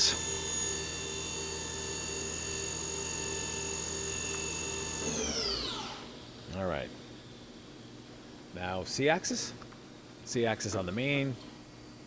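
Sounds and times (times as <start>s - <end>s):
lathe spindle whine: 0.0s - 6.4s.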